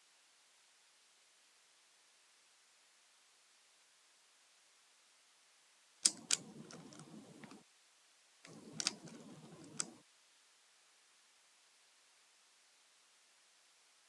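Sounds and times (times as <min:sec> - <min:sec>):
plastic puzzle cube clicking: 0:06.0 - 0:07.6, 0:08.5 - 0:10.0.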